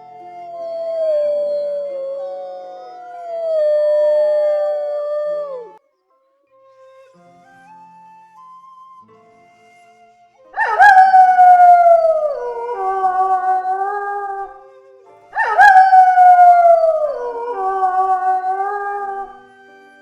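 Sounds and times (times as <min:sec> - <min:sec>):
wolf howling: 0:00.0 - 0:05.8, 0:10.6 - 0:14.7, 0:15.3 - 0:19.8.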